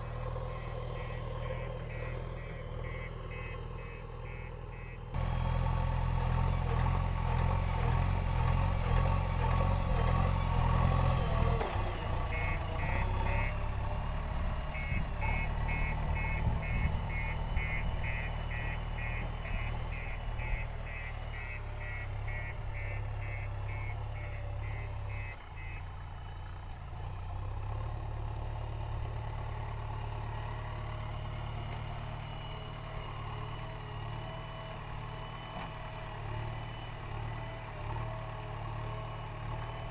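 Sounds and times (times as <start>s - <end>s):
diesel engine running under load: 0.0s - 39.9s
reversing alarm beeping: 0.4s - 5.2s, 12.2s - 13.7s, 14.7s - 25.8s.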